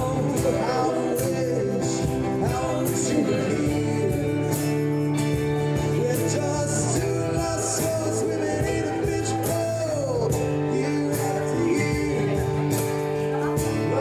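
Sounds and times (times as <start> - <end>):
live band guitars: 0.0 - 14.0
person singing: 0.0 - 14.0.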